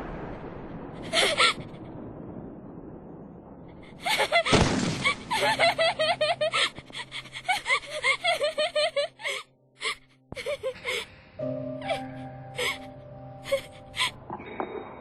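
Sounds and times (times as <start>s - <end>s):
sudden rushing hit: 0.0s - 5.5s
woman gasping and whimpering: 1.1s - 1.7s, 6.5s - 8.5s, 9.1s - 11.1s, 11.8s - 14.2s.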